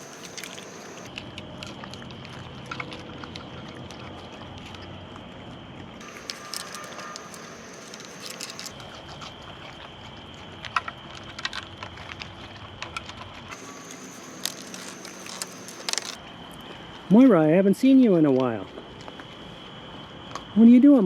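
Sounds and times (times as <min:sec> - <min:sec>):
clicks crinkles and rustles of toys: 0:06.0 - 0:08.9, 0:10.8 - 0:16.2.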